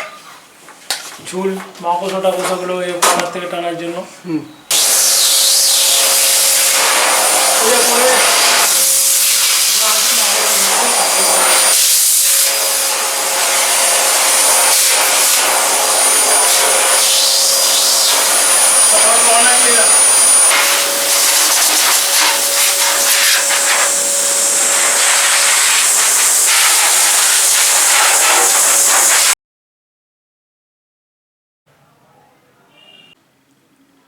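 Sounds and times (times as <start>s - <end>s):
vacuum cleaner running: 4.7s - 29.4s.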